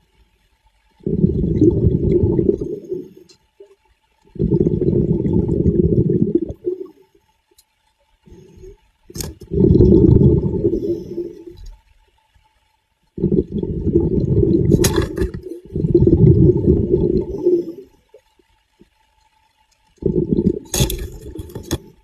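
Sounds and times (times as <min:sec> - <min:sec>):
sharp water splash: 0:14.6 - 0:15.5.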